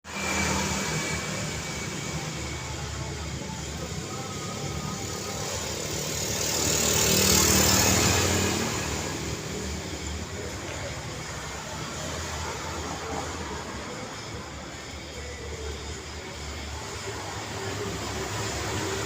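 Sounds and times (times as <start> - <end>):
cars passing: 0.0 - 19.0
motorcycles passing: 0.1 - 19.0.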